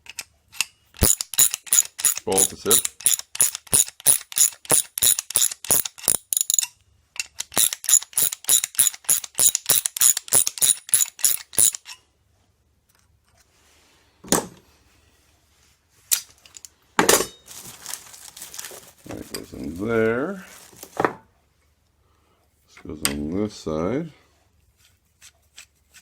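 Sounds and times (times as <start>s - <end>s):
ratchet wrench clicking: 1.0s - 6.7s, 7.3s - 11.9s
metal parts clattering: 1.0s - 12.0s.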